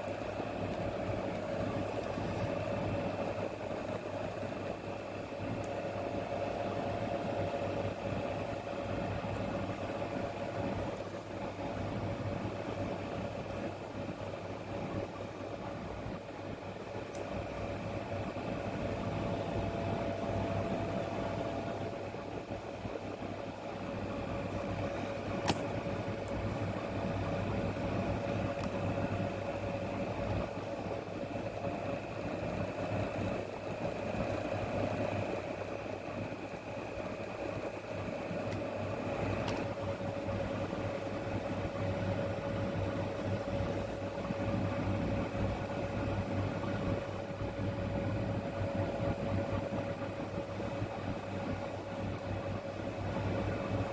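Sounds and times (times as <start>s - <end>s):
mechanical hum with whining tone: 0.0s - 53.9s.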